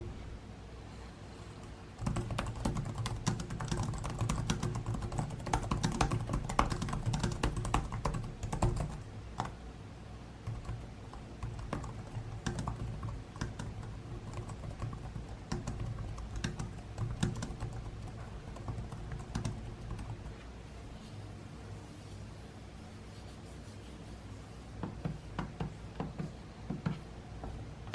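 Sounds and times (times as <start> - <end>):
laptop keyboard typing: 2.0 - 9.6, 10.4 - 20.3.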